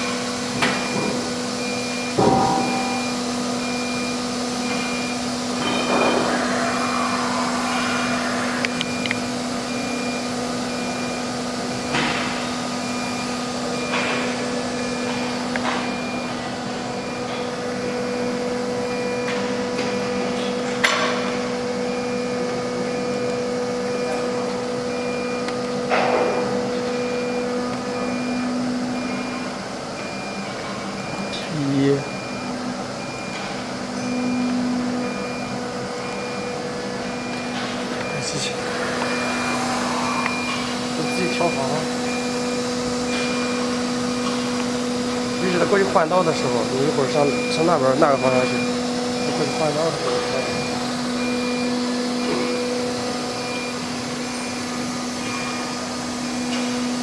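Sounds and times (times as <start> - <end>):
router machine electric hum: 0.0 - 19.0, 37.8 - 57.0
faint high pulsing tone: 2.2 - 11.1, 38.1 - 42.5.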